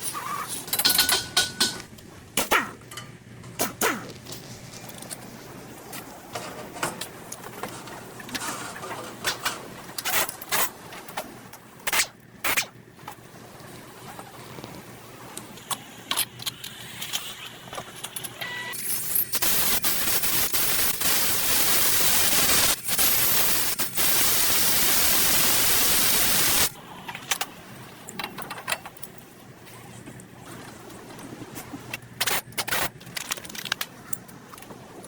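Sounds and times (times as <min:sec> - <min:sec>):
parts clicking and knocking: 0:00.0 - 0:05.3, 0:28.1 - 0:29.2, 0:31.9 - 0:34.7
loud spraying hiss: 0:19.4 - 0:26.7.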